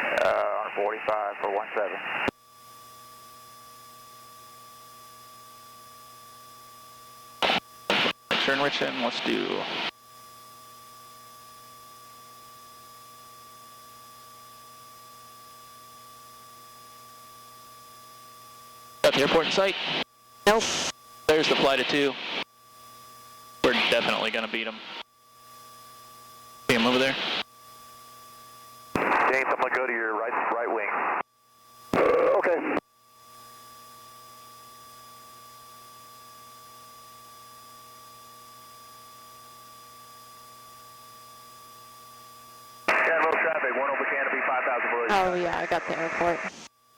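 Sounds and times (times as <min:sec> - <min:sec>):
faint hum tones: 0:00.0 - 0:46.9
intercom hiss: 0:07.4 - 0:09.9, 0:19.0 - 0:22.4, 0:23.6 - 0:25.0, 0:26.7 - 0:27.4, 0:29.0 - 0:31.2, 0:42.9 - 0:46.6
steady electronic hiss: 0:26.7 - 0:27.4.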